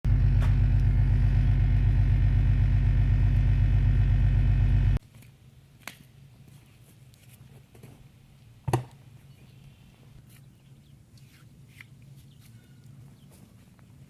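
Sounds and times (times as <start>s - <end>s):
vehicle engine droning: 0.0s - 5.0s.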